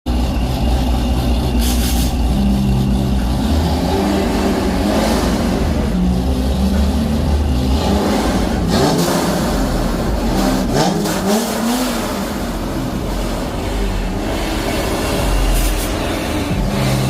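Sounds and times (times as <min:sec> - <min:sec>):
car engine revving loudly: 0:00.1 - 0:17.0.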